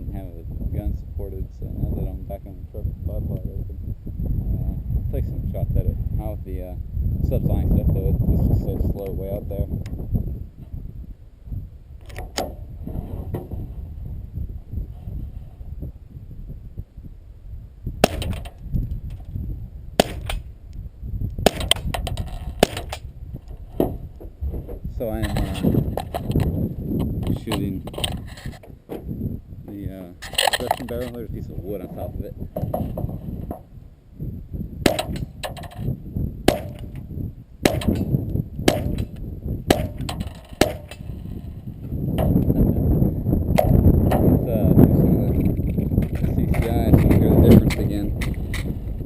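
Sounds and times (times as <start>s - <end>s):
gunshots with ringing tail: 18.0s - 18.5s, 20.0s - 20.4s, 21.4s - 21.9s, 22.6s - 23.0s, 34.8s - 35.2s, 36.4s - 36.9s, 37.6s - 38.1s, 38.7s - 39.1s, 39.7s - 40.0s, 40.6s - 41.0s
rifle shots: 18.0s - 18.5s, 20.0s - 20.4s, 21.5s - 21.9s, 22.6s - 23.0s, 34.9s - 35.2s, 36.5s - 36.9s, 37.6s - 38.1s, 38.7s - 39.1s, 39.7s - 41.1s.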